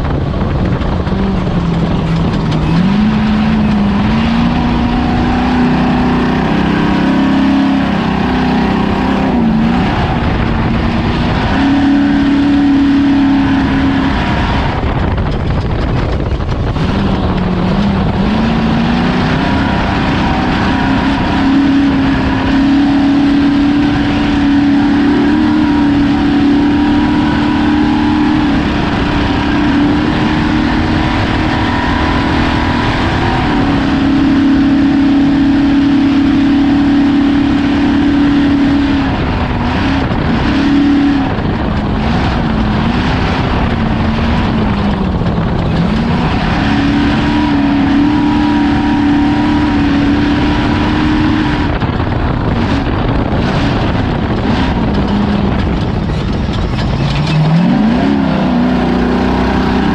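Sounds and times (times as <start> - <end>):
engine running at high revs: 0.0 - 59.9
loud rushing noise: 0.0 - 59.9.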